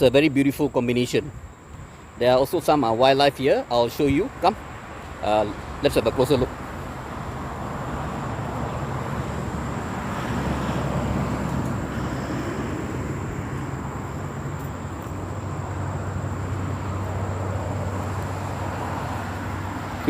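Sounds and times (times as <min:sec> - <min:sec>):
distant traffic rumble: 0:00.0 - 0:20.0.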